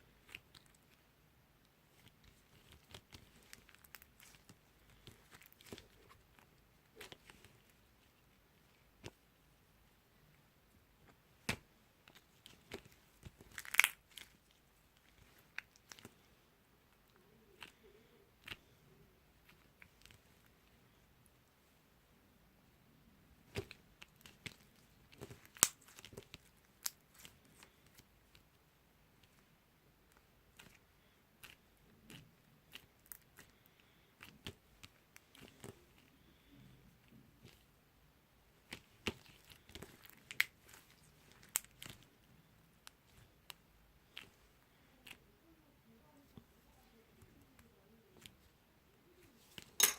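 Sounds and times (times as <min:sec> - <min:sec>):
slime crackling: 0:01.8 - 0:09.2, 0:11.3 - 0:16.3, 0:23.4 - 0:28.5, 0:38.5 - 0:49.8
slime clicking and popping: 0:12.6 - 0:14.4.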